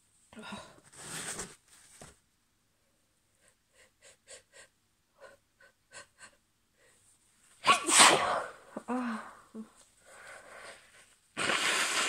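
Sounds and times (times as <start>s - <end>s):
person breathing: 8.9s - 12.0s.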